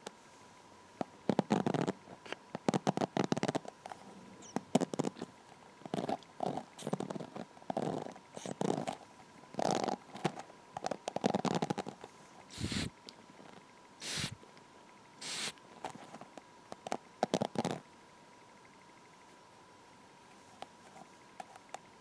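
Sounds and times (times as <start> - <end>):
hair brushing strokes: 12.5 - 12.9, 14.0 - 14.4.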